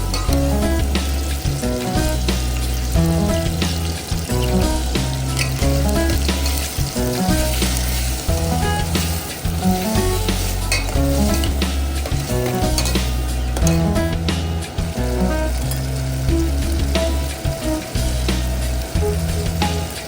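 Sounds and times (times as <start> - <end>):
background music with bass: 0.0 - 20.0.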